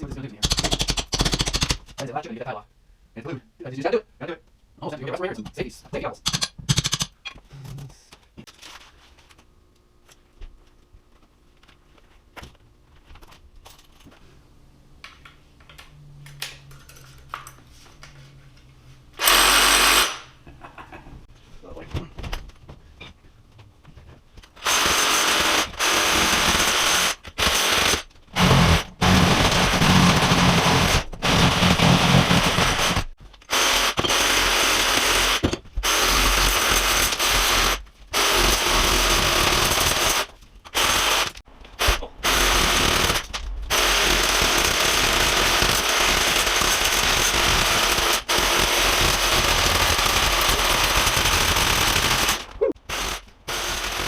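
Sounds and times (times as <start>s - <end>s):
electric chipping hammer: 19.2s - 20.3s, 24.6s - 54.0s.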